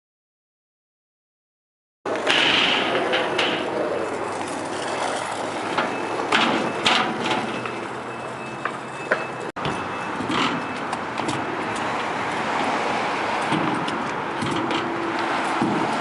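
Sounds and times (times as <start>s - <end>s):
scooter clacking on ground: 2.1s - 12.7s
scooter wheels rolling on concrete: 2.1s - 16.0s.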